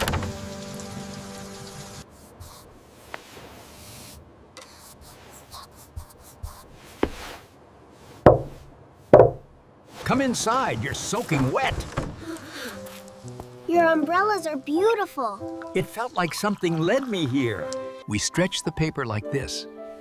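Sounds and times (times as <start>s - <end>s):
rain: 0.0s - 2.0s
soft music: 0.0s - 2.0s, 12.2s - 20.0s
loud knocks on wood: 8.3s - 8.6s, 9.2s - 9.5s.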